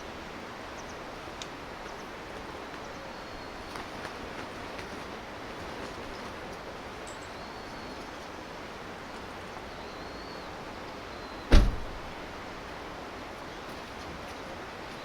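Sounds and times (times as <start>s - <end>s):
heavy thump: 11.5s - 12.2s.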